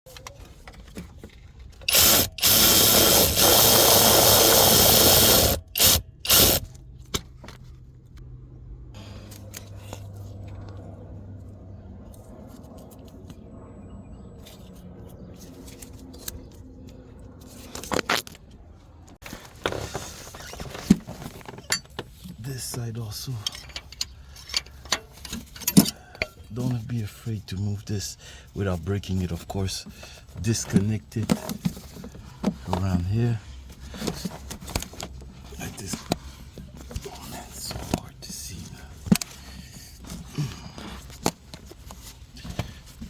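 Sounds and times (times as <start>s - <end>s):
power tool running on bolts: 1.9s - 6.6s.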